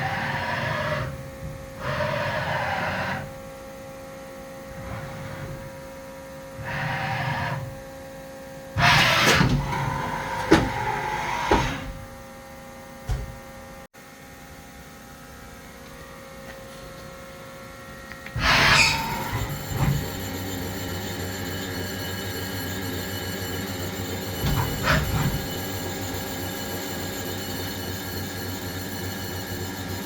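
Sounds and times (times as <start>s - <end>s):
lathe machine hum: 8.8s - 12.0s
mechanical noise bursts and clicks: 8.8s - 12.1s, 18.4s - 20.3s.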